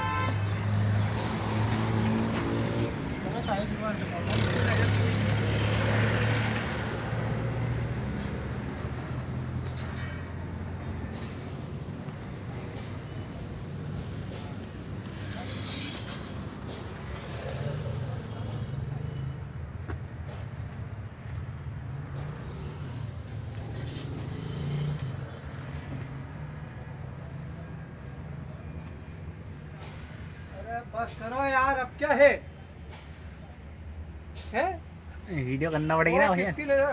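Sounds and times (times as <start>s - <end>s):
faint short hisses or clicks: 29.8s - 30.5s.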